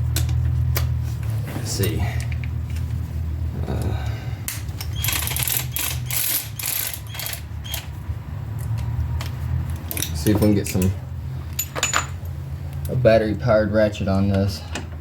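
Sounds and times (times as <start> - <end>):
steady low hum: 0.0 - 15.0
metal tools clicking and rattling: 4.5 - 7.9, 8.6 - 13.0.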